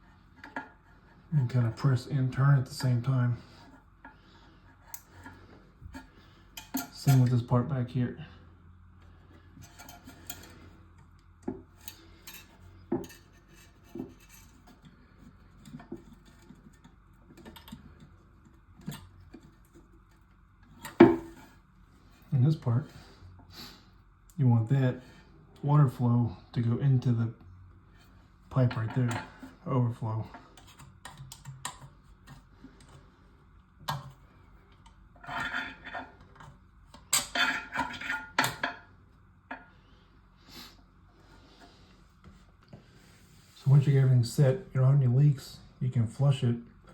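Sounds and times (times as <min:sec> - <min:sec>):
toilet tank parts clattering: 0:04.9 - 0:07.5, 0:20.6 - 0:21.6, 0:35.2 - 0:38.9.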